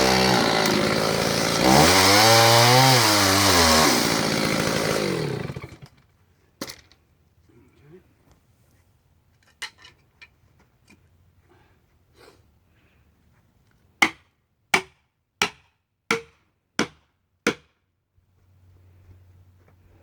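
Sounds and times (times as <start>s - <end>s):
tool striking wood: 14.0s - 17.8s.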